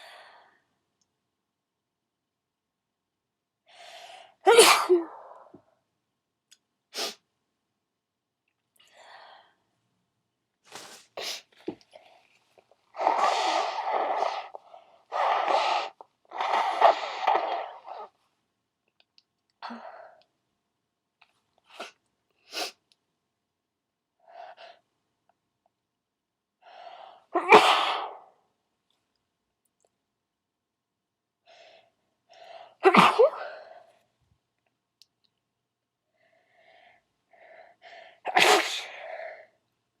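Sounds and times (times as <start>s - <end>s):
person sneezing loudly: 4.5s - 5.4s, 27.4s - 28.3s, 32.8s - 33.5s, 38.3s - 39.0s
person sniffing: 7.0s - 7.2s, 10.7s - 11.5s, 13.0s - 18.1s, 21.8s - 22.8s.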